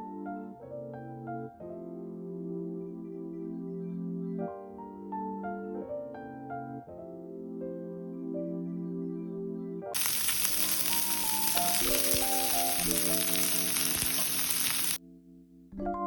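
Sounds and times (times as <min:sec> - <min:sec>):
soft piano music: 0:00.0 - 0:15.0
food sizzling in a pan: 0:10.0 - 0:15.0.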